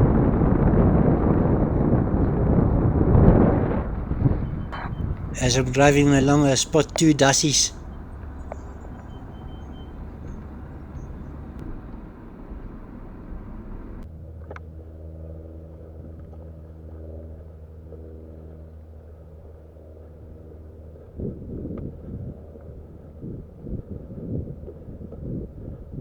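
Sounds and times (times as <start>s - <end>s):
car engine and tyre rumble: 2.0s - 5.4s, 7.7s - 20.8s.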